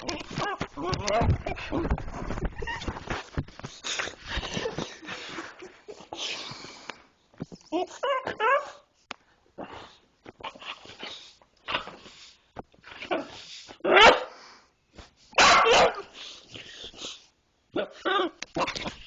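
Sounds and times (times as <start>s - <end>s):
dog yelping and barking: 13.1s - 14.3s, 15.4s - 16.2s.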